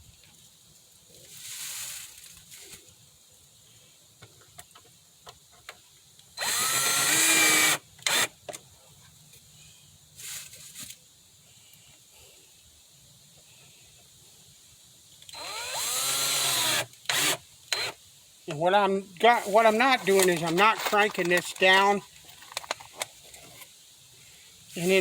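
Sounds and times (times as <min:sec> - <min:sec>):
power drill driving screws: 0:06.4 - 0:08.3, 0:15.3 - 0:18.0.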